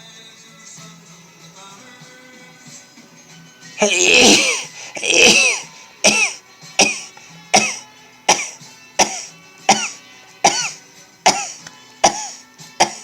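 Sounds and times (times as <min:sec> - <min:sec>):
man sneezing: 0:03.8 - 0:13.0.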